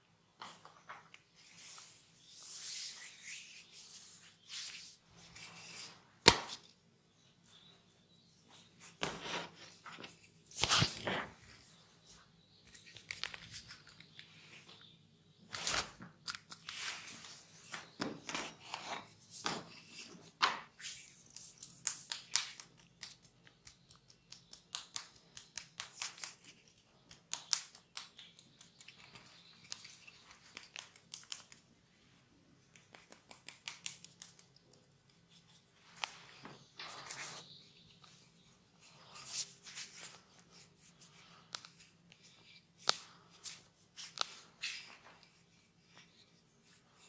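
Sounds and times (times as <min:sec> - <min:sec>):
hands rubbing hair and skin: 0:01.4 - 0:06.0.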